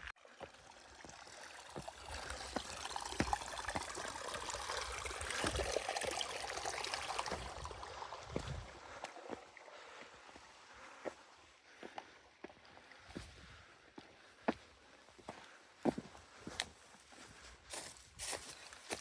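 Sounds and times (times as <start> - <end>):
stream trickling over rocks: 0.0 - 13.2, 17.7 - 19.0
footsteps on rocky trail: 2.1 - 6.2, 7.0 - 19.0.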